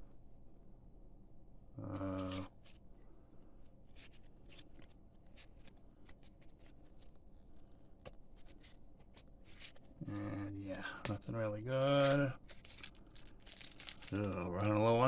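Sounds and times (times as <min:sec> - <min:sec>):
cards rustling and flicking: 0:03.9 - 0:10.4, 0:11.0 - 0:15.0.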